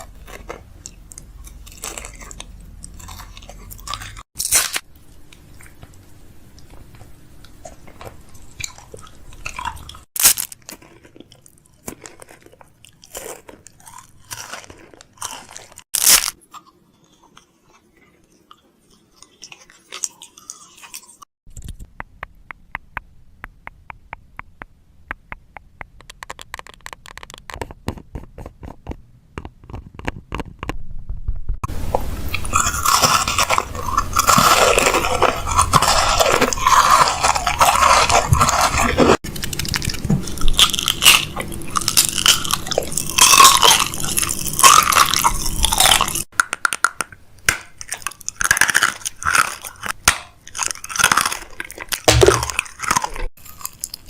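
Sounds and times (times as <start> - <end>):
plastic containers clicking and knocking: 21.5 - 30.8
fast evenly spaced ticks: 21.8 - 28.0.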